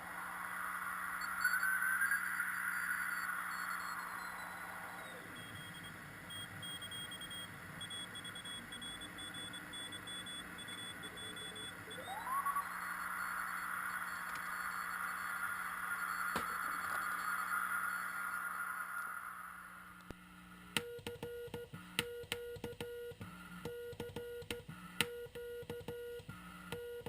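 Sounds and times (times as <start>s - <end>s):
rising radio whistle: 0.0s - 5.9s, 10.2s - 19.8s
faint morse beeps: 0.0s - 19.7s
radio static hiss: 0.0s - 20.1s.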